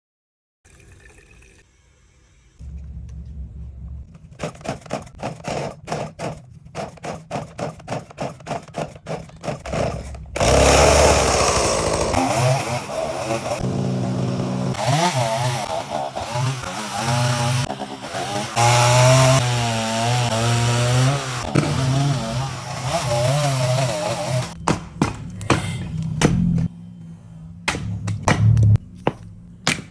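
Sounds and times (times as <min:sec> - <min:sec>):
fast regular clatter: 0:04.1 - 0:10.6
chainsaw cutting wood: 0:04.4 - 0:26.7.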